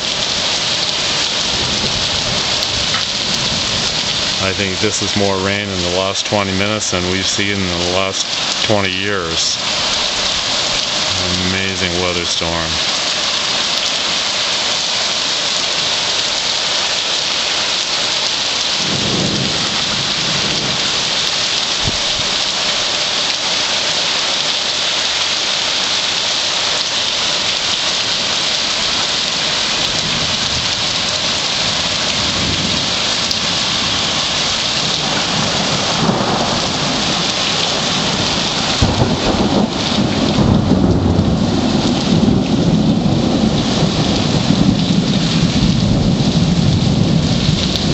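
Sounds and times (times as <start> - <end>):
thunder rumbling: 0.0 - 12.9, 18.8 - 22.3, 29.7 - 47.9
heavy rain hissing: 0.0 - 47.9.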